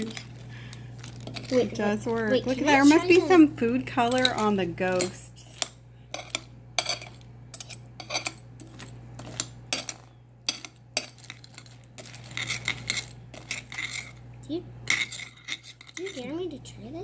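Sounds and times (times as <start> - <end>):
spoon clinking against bowl: 4.1 - 14.1.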